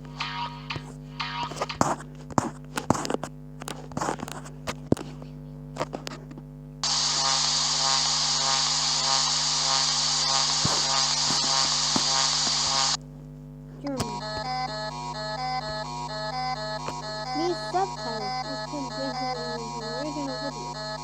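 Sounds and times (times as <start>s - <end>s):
electrical hum: 0.0s - 21.0s
loud static hiss: 5.7s - 21.0s.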